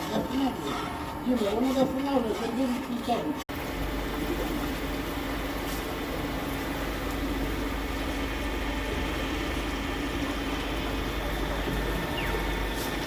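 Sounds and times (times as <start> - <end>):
machine running steadily: 0.0 - 13.0.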